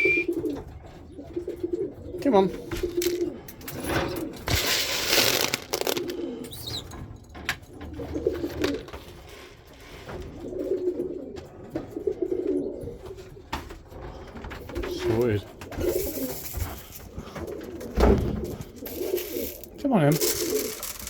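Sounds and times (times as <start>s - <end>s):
pigeons cooing: 0.0s - 21.0s
loud rustle: 4.5s - 6.9s.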